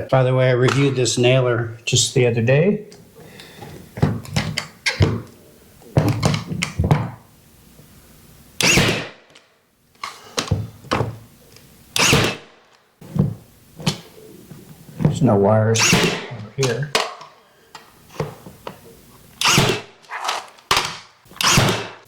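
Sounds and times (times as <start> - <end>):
brad nailer shots: 8.6 - 9.3, 12.0 - 12.7, 15.8 - 16.8, 19.4 - 22.0.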